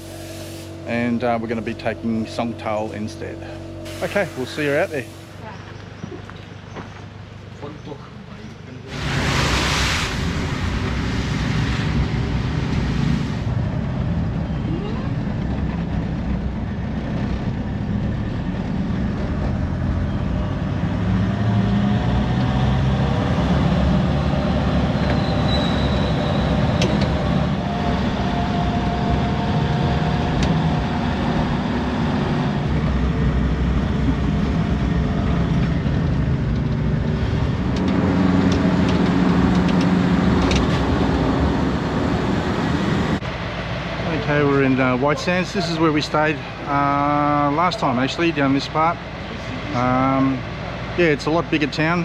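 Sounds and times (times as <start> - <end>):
truck engine running: 0.0 - 7.5
road and wind noise: 0.0 - 52.0.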